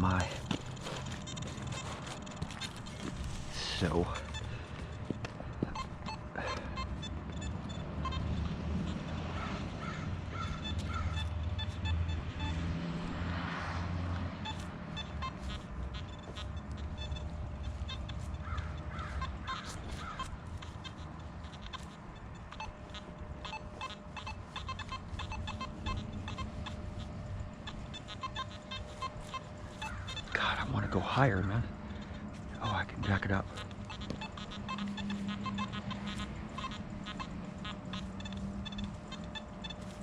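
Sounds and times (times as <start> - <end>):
metal detector broken tones: 0.0 - 12.6, 14.1 - 40.0.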